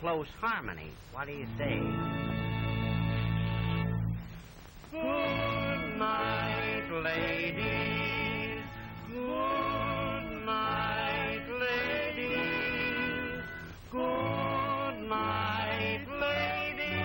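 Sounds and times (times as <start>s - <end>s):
voices singing in harmony: 4.9s - 17.0s.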